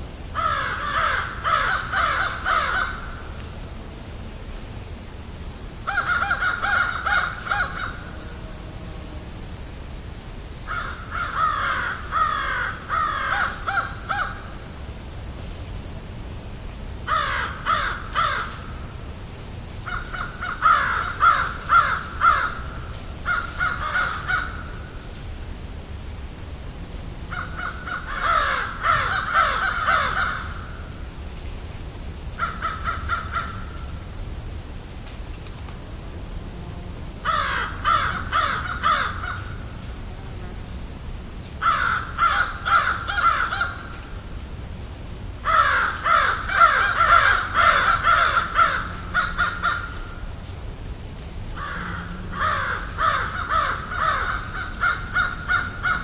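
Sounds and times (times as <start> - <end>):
steady high hiss: 0.0 - 56.0
crows cawing: 0.4 - 3.2, 5.9 - 8.1, 10.7 - 14.5, 17.1 - 18.6, 19.9 - 22.7, 23.3 - 24.8, 27.3 - 30.8, 32.4 - 33.8, 37.3 - 39.6, 41.6 - 43.9, 45.5 - 50.2, 51.6 - 56.0.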